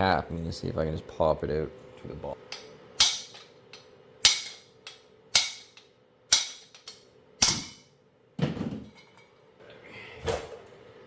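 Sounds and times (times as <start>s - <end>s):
hammer striking metal: 2.5s - 7.9s.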